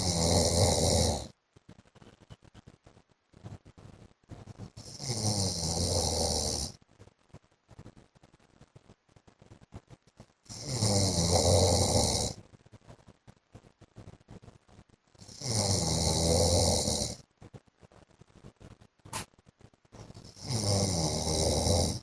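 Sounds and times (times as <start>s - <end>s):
man snoring: 0.0s - 1.3s, 4.8s - 6.8s, 10.5s - 12.4s, 15.2s - 17.2s, 20.2s - 22.0s.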